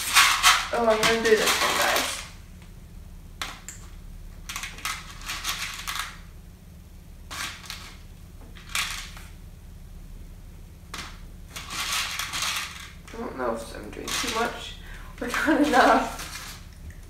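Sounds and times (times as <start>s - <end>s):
small hard pieces rattling: 10.9s - 13.2s, 13.9s - 16.7s.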